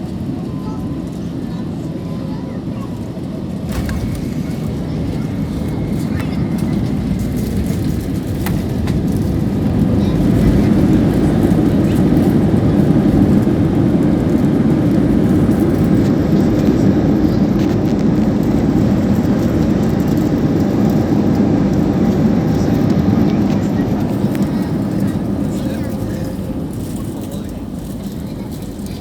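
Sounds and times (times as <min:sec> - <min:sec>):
airflow inside aircraft cabin: 0:00.0 - 0:29.0
loud rumble of jet engines: 0:00.0 - 0:29.0.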